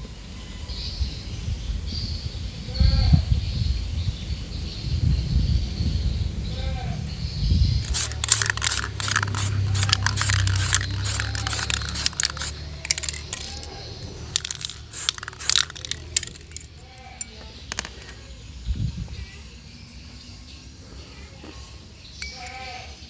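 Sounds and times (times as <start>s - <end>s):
small metal parts clinking: 7.8s - 18.2s.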